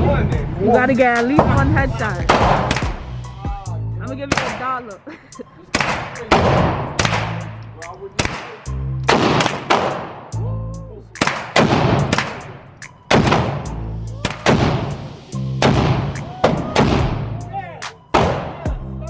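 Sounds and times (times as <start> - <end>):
rap music: 0.0 - 19.0
echoing gunshots: 8.2 - 10.3, 11.2 - 13.6.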